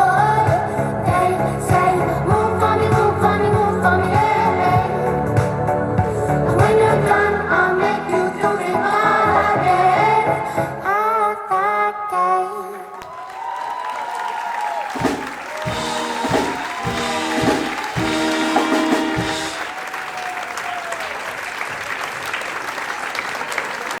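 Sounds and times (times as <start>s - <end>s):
audience applauding: 13.0s - 24.0s
audience cheering: 13.0s - 24.0s
dance song: 14.9s - 19.7s.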